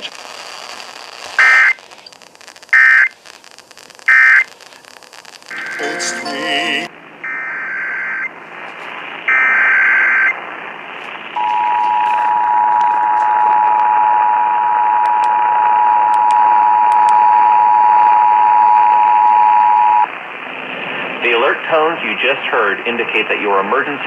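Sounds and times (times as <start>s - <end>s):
warbling data tones: 0.0s - 8.3s
radio hiss: 0.0s - 16.3s, 19.2s - 24.0s
two-tone attention signal: 5.5s - 7.6s.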